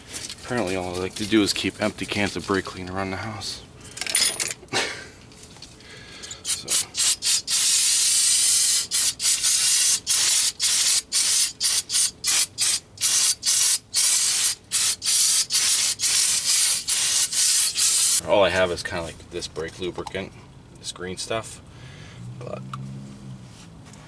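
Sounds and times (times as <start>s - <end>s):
aerosol spray hissing: 6.5s - 18.2s.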